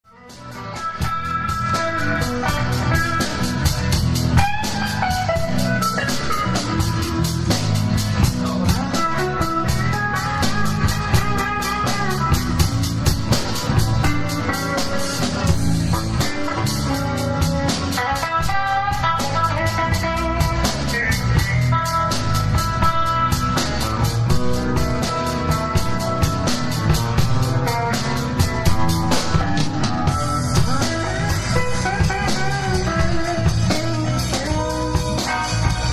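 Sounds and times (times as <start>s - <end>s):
bass: 0.0s - 35.9s
drum kit fast beat: 0.1s - 35.9s
guitar lines: 0.1s - 35.9s.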